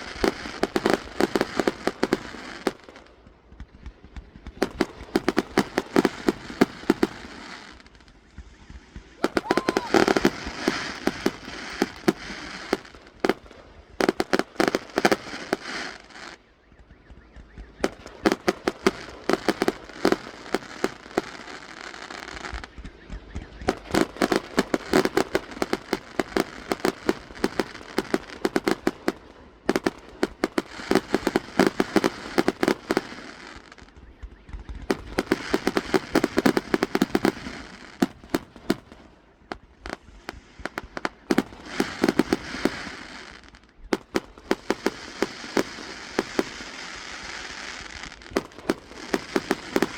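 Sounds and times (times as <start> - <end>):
fireworks cracking and popping: 0.0 - 49.9.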